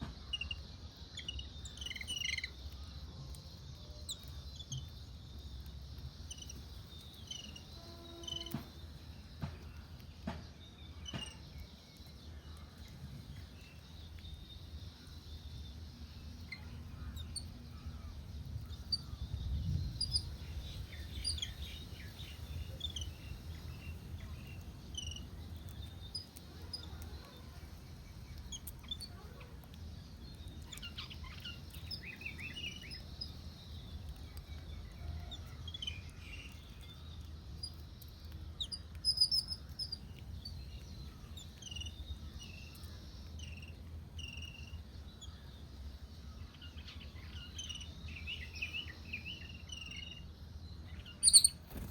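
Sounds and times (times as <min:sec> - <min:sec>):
low background rumble: 0:00.0 - 0:51.9
songbirds chirping: 0:00.0 - 0:51.9.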